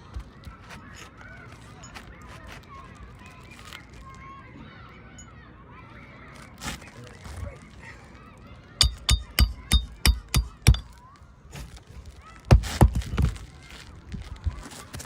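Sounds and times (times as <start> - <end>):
hammer striking nails: 8.8 - 10.9, 12.5 - 13.4.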